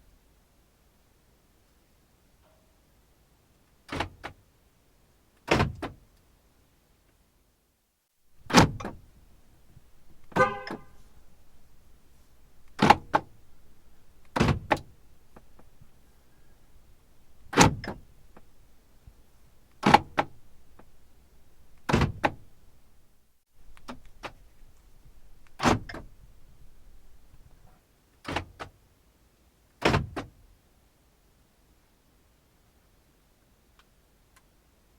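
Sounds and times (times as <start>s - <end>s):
car door locks clunking: 8.4s - 9.2s, 9.8s - 15.9s, 17.2s - 18.6s, 19.8s - 21.0s, 21.6s - 22.5s, 25.5s - 26.2s
car horn chirp: 10.0s - 12.1s.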